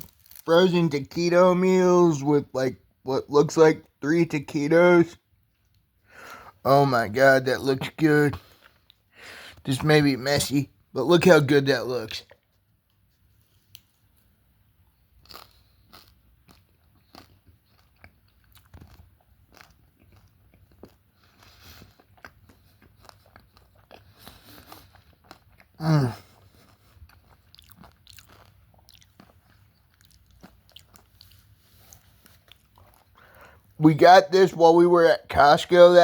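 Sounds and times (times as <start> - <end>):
crunching bites and chewing: 0.0 - 0.5, 15.1 - 33.8.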